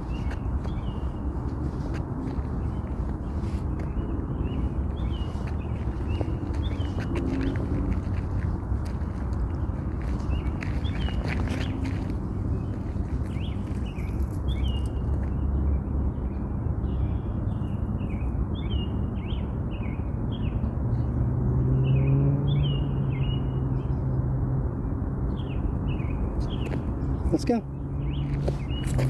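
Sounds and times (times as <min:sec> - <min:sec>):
steady low rumble: 0:00.0 - 0:18.6
small birds chirping: 0:00.0 - 0:29.0.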